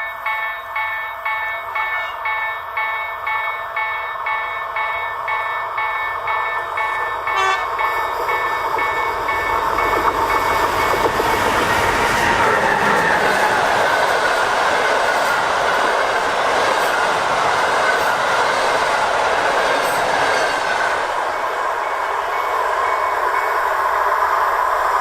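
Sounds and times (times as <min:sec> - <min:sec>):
level crossing warning bell: 0:00.0 - 0:11.9
approaching train: 0:00.0 - 0:25.0
train horn blast: 0:07.3 - 0:07.8.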